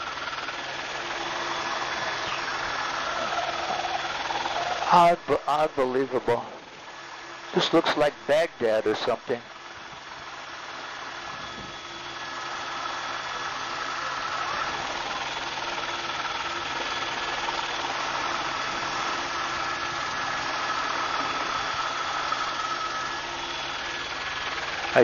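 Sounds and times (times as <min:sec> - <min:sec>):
helicopter engine and rotor noise: 0:00.0 - 0:25.0
steady whining tones: 0:00.0 - 0:25.0.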